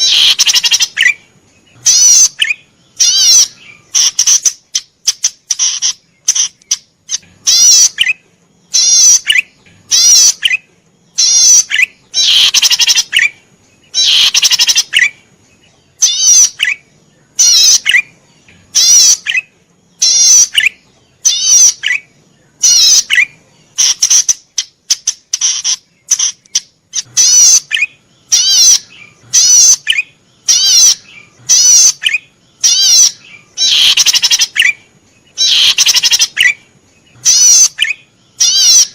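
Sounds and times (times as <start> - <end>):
bird singing buzzy trilled notes: 0.0 - 38.9.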